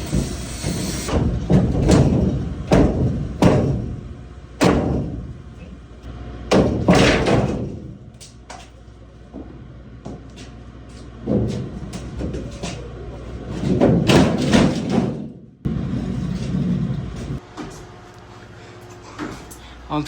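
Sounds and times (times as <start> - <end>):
sheet metal banging: 0.0 - 5.7, 6.5 - 8.1, 13.5 - 17.4.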